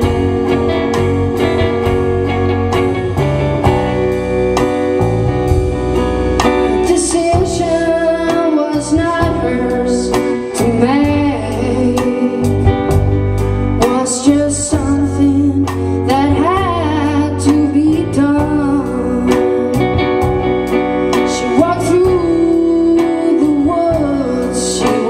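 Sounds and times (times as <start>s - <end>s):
rock band playing: 0.0s - 25.0s
woman singing: 6.4s - 13.0s, 13.7s - 20.3s, 21.1s - 25.0s.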